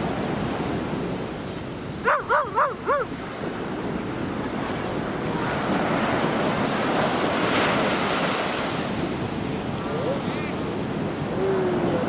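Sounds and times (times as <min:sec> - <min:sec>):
surf breaking on a beach: 0:02.7 - 0:12.0.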